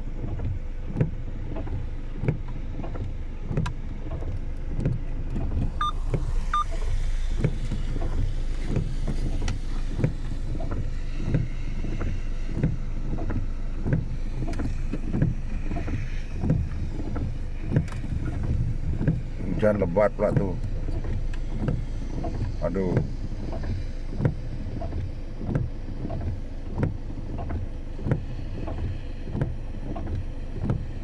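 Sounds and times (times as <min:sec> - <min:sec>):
vehicle driving drone: 0:02.6 - 0:31.0.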